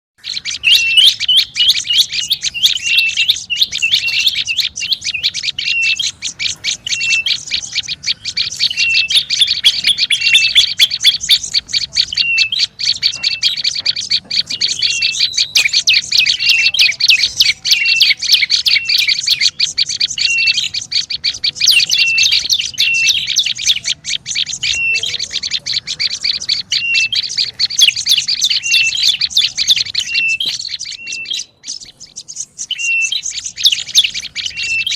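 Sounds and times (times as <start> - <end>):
bird chattering with clicky notes: 0.2 - 34.9.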